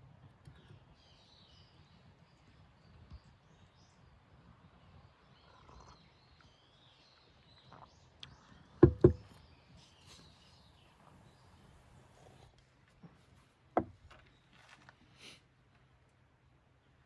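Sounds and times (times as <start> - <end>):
loud knocks: 8.8 - 9.3.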